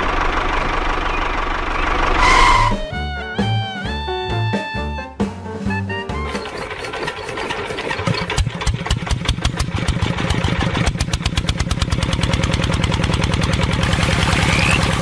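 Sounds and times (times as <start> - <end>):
small engine starting and running: 6.2 - 15.0.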